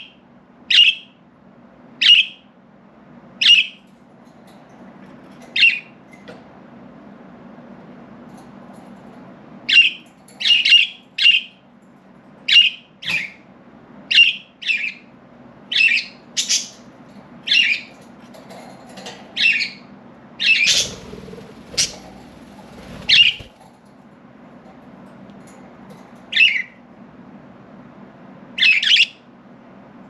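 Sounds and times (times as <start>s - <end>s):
budgerigars chirping: 20.4s - 23.5s.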